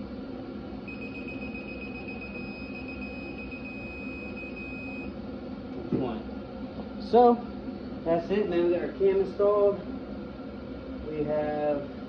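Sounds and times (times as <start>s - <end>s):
torque wrench high-pitched beep: 0.9s - 5.1s.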